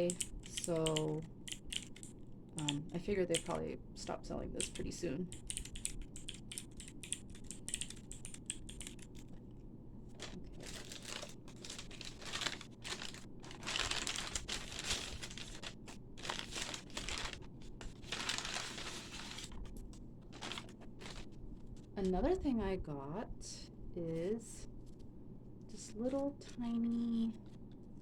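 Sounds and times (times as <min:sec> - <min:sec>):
bag crinkling and rustling: 0:10.1 - 0:21.9.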